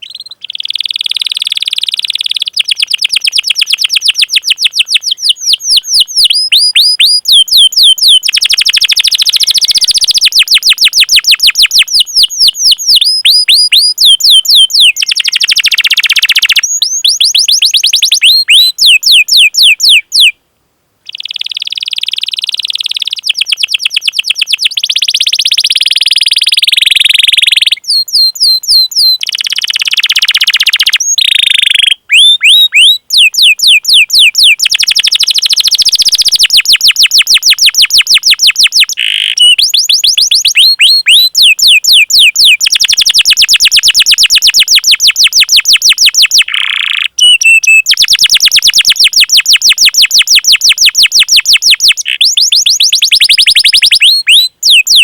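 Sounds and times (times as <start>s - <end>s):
canary singing: 0.0s - 20.4s, 21.0s - 55.0s.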